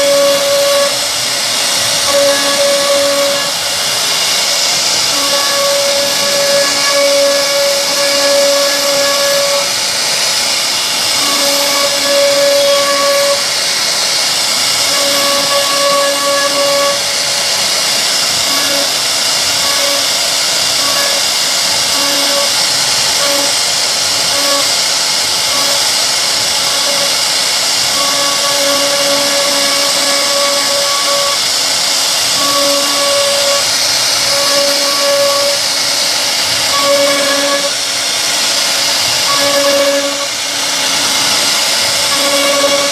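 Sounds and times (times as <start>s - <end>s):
router cutting wood: 0.0s - 42.9s.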